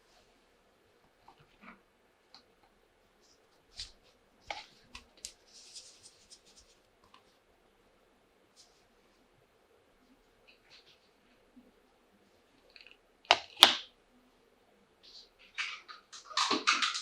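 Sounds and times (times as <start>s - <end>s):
scratchy rustle: 3.2s - 6.8s.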